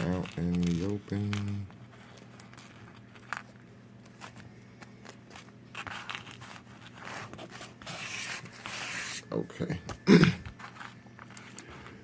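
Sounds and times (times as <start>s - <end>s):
packaging rustling: 0.0s - 8.6s
faint steady hum: 0.0s - 12.0s.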